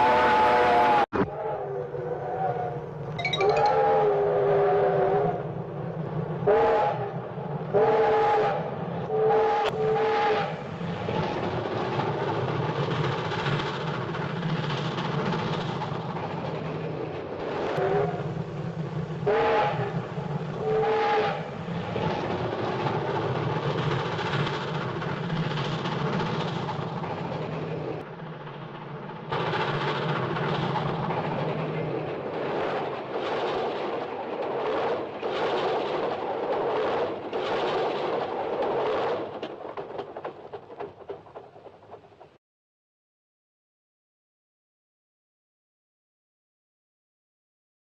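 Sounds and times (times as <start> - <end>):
train whistle blasts: 0.0 - 1.1, 7.8 - 10.5, 19.2 - 19.9, 20.6 - 21.4
train rumbling: 3.9 - 42.4.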